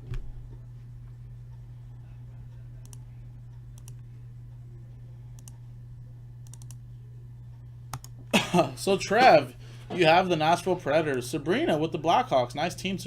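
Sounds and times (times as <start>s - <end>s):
steady low hum: 0.0s - 13.0s
computer mouse clicks: 2.8s - 3.1s, 3.8s - 4.0s, 5.4s - 5.6s, 6.4s - 6.8s, 7.9s - 8.2s.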